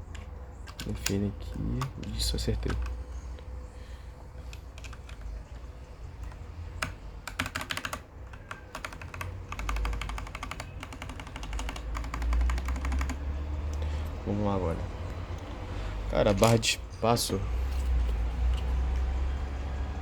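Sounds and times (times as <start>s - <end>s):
mechanical keyboard keys clacking: 0.1s - 3.0s, 4.5s - 5.6s, 6.2s - 13.2s.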